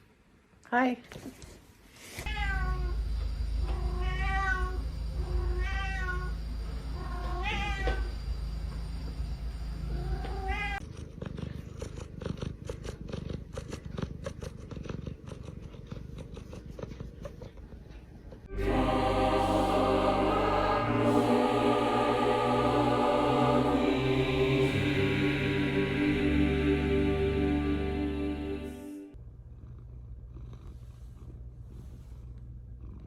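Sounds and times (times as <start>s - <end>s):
cat meowing: 2.3s - 3.0s, 3.7s - 6.4s, 7.0s - 8.0s, 10.0s - 10.8s.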